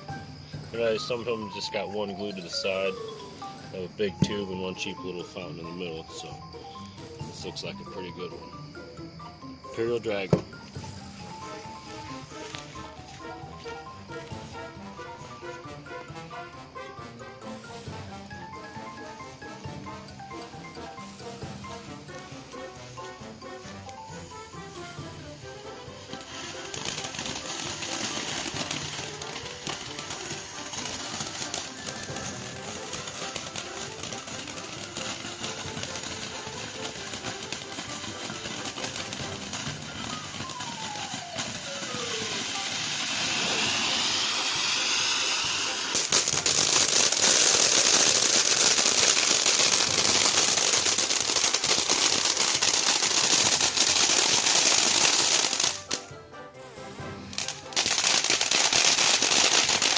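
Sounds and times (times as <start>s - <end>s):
firework fountain hissing and crackling: 0.0s - 59.9s
music playing: 0.0s - 59.9s.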